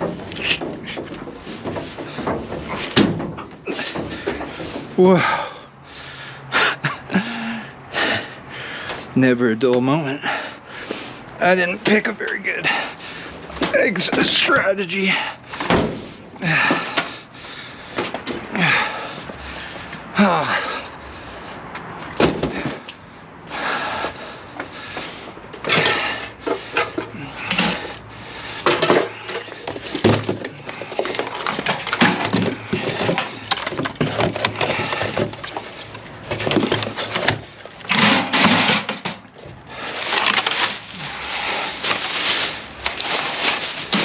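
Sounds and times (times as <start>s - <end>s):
scrap knocking and clattering: 0.0s - 5.3s, 25.6s - 44.0s.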